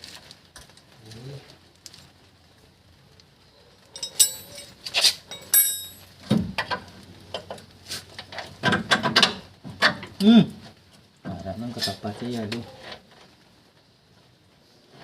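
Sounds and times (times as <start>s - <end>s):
metal hand tools clanking: 4.0s - 6.1s.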